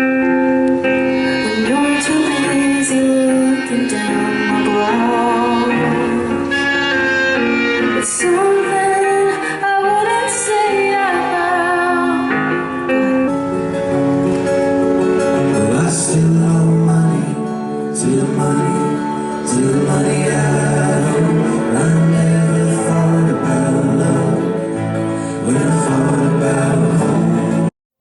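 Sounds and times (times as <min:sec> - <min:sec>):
guitar: 0:00.0 - 0:27.8
woman singing: 0:01.3 - 0:06.6, 0:08.0 - 0:12.8.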